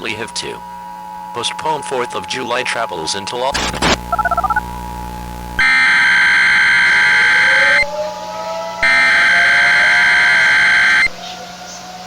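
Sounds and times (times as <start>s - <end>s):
buzzy digital warble: 3.6s - 7.9s.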